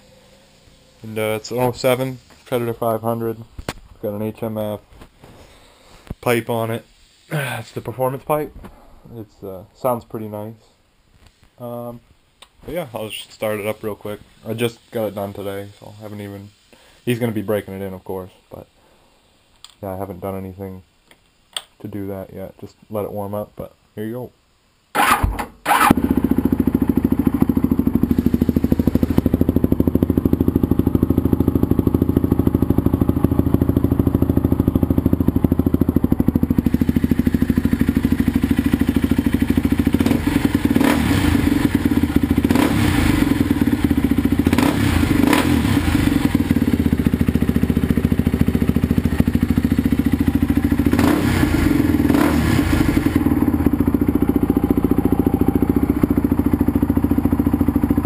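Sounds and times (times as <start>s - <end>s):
atv engine idling: 26.0s - 58.0s.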